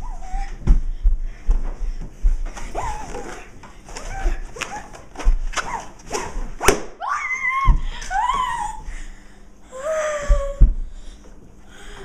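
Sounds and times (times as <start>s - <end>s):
balloon squealing: 2.7s - 8.8s.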